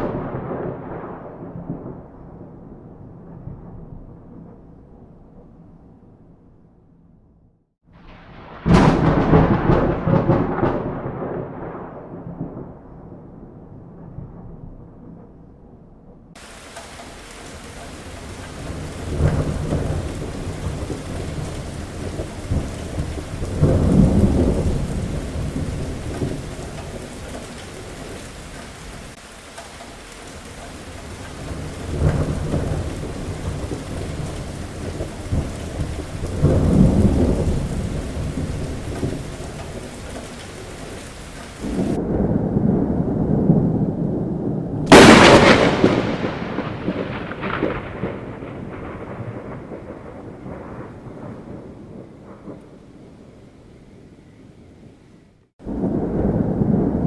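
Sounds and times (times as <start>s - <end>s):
sharp close thunderclap: 0.0s - 5.1s, 8.0s - 15.4s, 16.3s - 53.4s, 55.6s - 57.0s
low rolling thunder: 0.0s - 6.9s, 7.9s - 57.0s
heavy rain: 7.9s - 12.8s, 16.4s - 57.0s.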